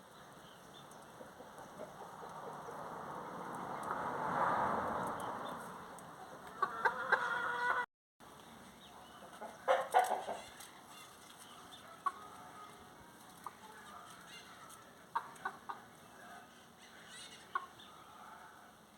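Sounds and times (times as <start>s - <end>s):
chickens clucking: 0.8s - 2.9s, 5.1s - 7.9s, 8.9s - 18.4s.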